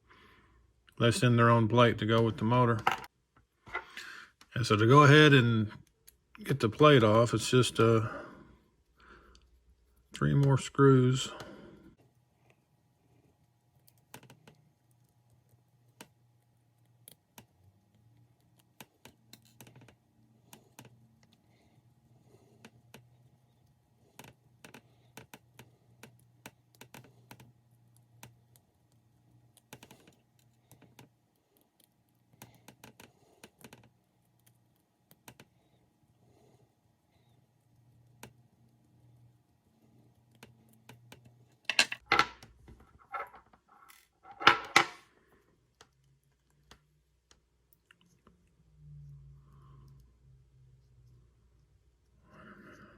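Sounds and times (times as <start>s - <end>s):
metal parts clattering: 41.7s - 42.4s.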